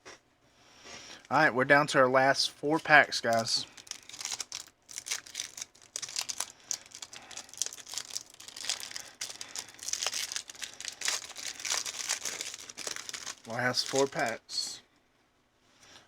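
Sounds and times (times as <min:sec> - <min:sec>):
foil wrapper crinkling and tearing: 0:03.2 - 0:14.5.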